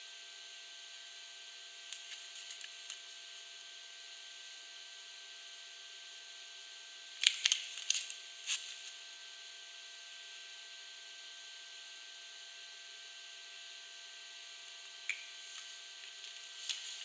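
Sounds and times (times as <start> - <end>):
packaging crinkling: 1.9 - 3.1, 7.2 - 8.9, 15.4 - 17.0
faint steady hiss: 14.4 - 17.0.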